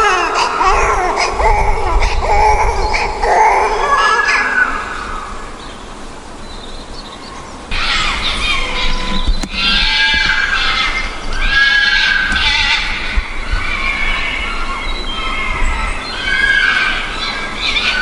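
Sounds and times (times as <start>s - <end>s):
animal high wavering calls: 0.0s - 5.5s, 7.7s - 18.0s.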